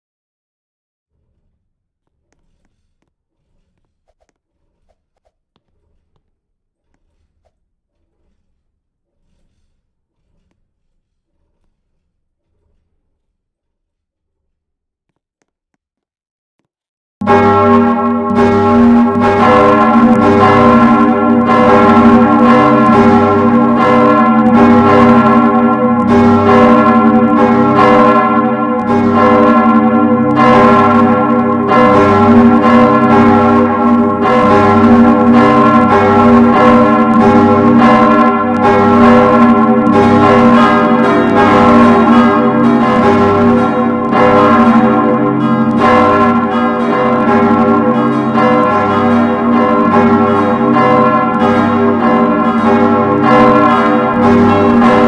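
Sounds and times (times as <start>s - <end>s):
church bells ringing: 17.2s - 55.0s.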